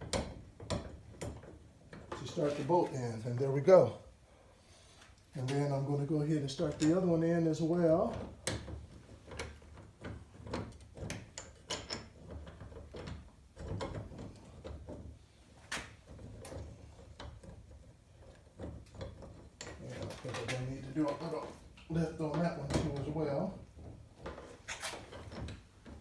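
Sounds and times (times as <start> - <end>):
light metal clicks and knocks: 6.5 - 26.0.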